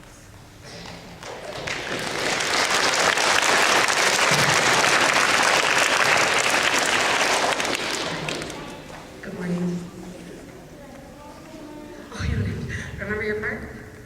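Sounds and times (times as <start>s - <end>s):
audience applauding: 1.2s - 9.1s.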